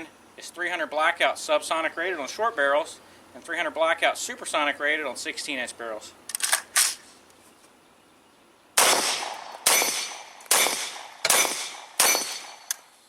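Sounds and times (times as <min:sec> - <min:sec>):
suppressed gunshots: 0:08.8 - 0:12.9.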